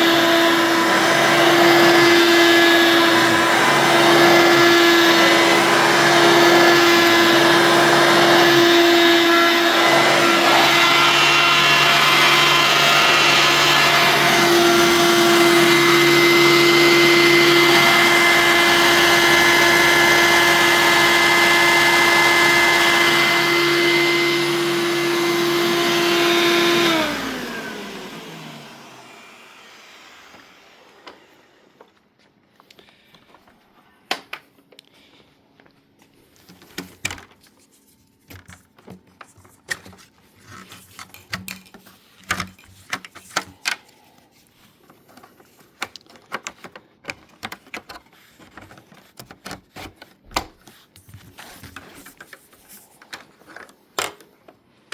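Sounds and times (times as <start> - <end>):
vacuum cleaner motor whine: 0.0 - 31.9
clicks and knocks of handling: 36.4 - 44.0, 44.8 - 54.6.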